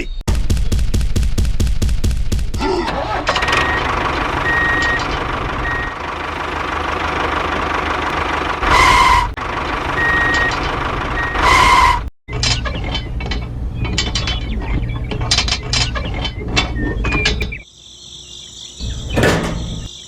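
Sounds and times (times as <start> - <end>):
small vehicle engine running: 2.9 - 12.0
reversing beeps: 3.7 - 6.0, 10.0 - 10.6
horn blasts: 8.6 - 9.4, 11.2 - 12.1.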